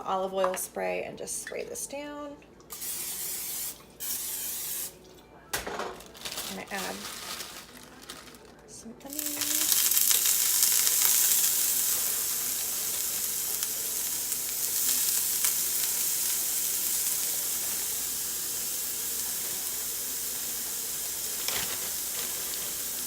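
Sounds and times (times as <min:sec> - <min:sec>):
onions sizzling: 0:02.7 - 0:05.0, 0:06.0 - 0:23.0.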